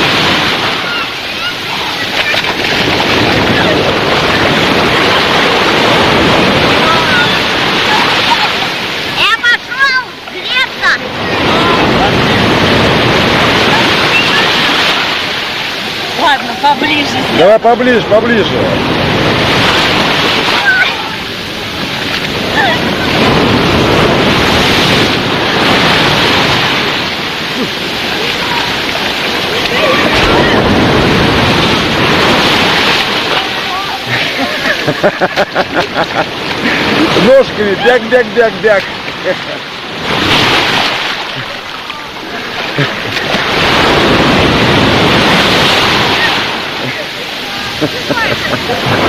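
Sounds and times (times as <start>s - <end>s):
wind buffeting microphone: 0.0s - 9.2s, 10.5s - 39.2s, 39.8s - 46.8s
surf washing onto shore: 0.0s - 49.0s.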